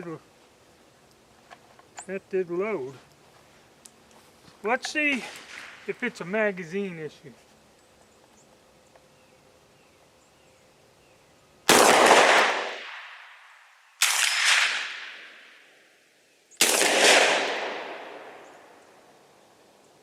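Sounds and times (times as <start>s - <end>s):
shotgun shots with echo: 11.7s - 13.2s, 14.0s - 15.5s, 16.6s - 18.4s.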